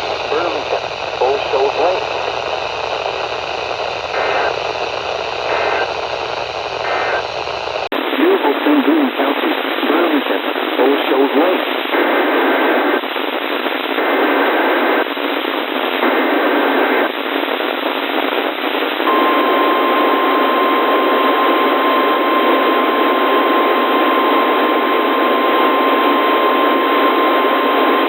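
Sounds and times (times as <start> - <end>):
heavy radio static: 0.0 - 6.0, 6.8 - 28.0
steady warning beep: 19.1 - 28.0.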